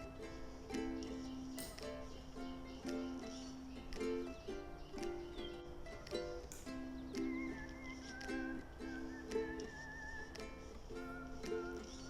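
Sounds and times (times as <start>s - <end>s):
plucked chords: 0.0s - 12.0s.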